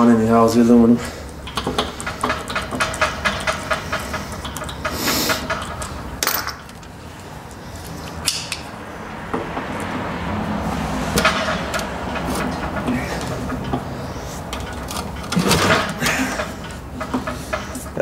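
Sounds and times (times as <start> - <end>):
hand tools knocking on metal: 1.4 - 6.7, 9.2 - 18.0.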